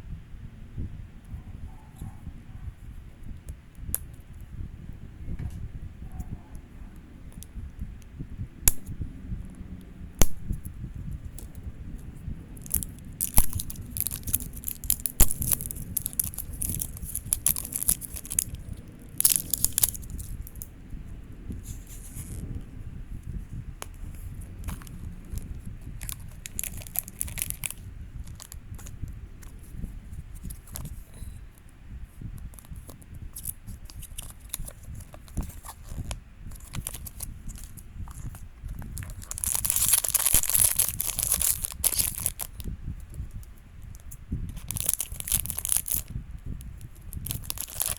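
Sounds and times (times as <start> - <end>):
plastic packaging crinkling: 12.6 - 20.7, 24.6 - 29.6, 33.4 - 42.7, 44.5 - 46.1, 46.9 - 47.9.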